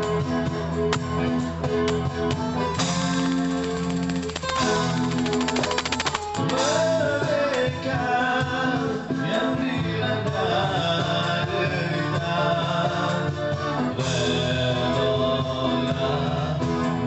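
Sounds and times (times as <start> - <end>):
busker band playing music: 0.0 - 17.0
man singing: 6.3 - 17.0.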